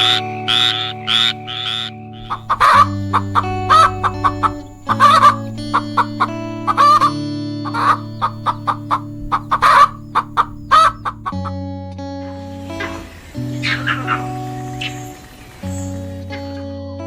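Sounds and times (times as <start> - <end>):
background music with held chords: 0.0 - 17.0
bird clucking: 0.1 - 11.6.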